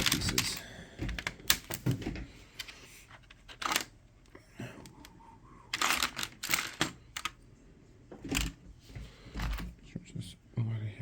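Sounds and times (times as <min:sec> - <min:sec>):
plastic pieces clicking: 0:00.0 - 0:01.9, 0:03.1 - 0:04.0, 0:05.7 - 0:07.4.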